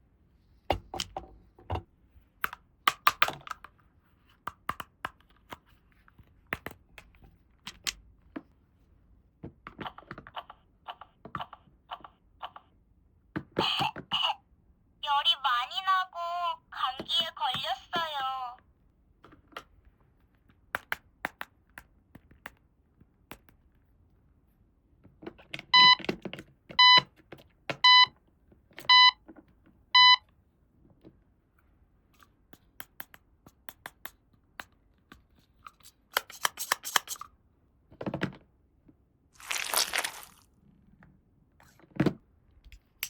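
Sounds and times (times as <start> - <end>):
toy electronic beeps: 25.8 - 26.0, 26.8 - 27.0, 27.9 - 28.1, 28.9 - 29.2, 30.0 - 30.2.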